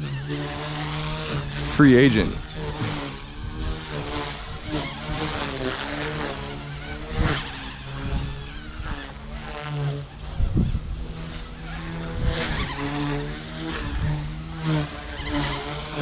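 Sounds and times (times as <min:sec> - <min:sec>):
rc helicopter whine: 0:00.0 - 0:16.0
wind rumbling on microphone: 0:10.2 - 0:12.7.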